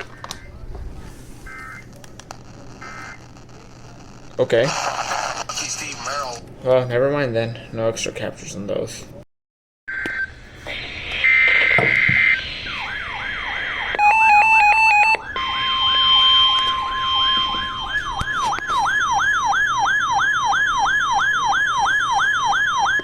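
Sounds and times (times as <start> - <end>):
siren-style alarm sweeping down: 10.0 - 23.0
stepped beeps: 14.0 - 19.0.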